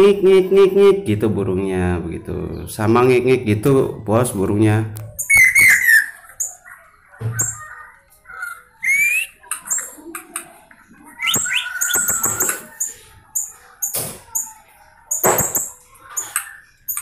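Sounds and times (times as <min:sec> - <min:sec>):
bird high chirps and squeaks: 0:05.1 - 0:10.1, 0:11.2 - 0:17.0.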